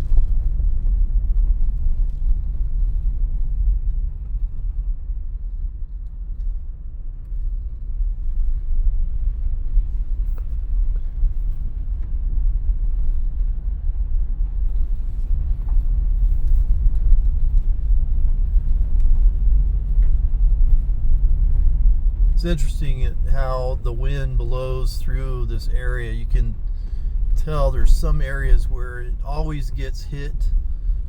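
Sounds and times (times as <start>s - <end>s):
vehicle driving rumble: 18.1s - 31.0s.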